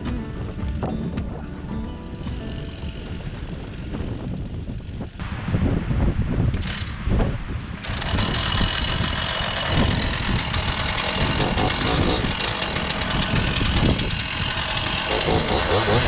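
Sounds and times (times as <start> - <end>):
wind rumbling on microphone: 0.0 - 16.0
chainsaw engine running: 7.8 - 16.0.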